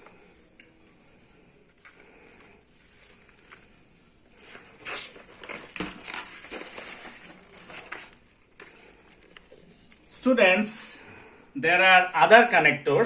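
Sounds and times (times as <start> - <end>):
rustling and crinkling handling noise: 0.0 - 10.2.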